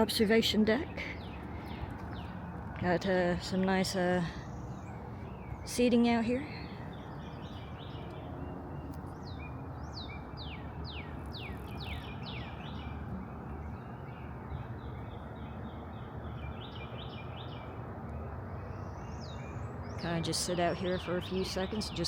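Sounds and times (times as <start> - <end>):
bird chirps: 4.4 - 22.0.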